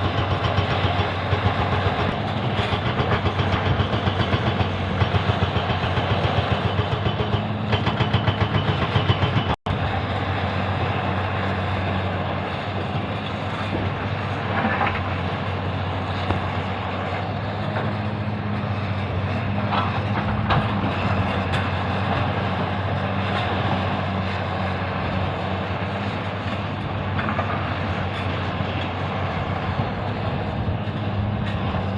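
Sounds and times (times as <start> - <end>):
excavator diesel engine running: 0.0 - 31.9.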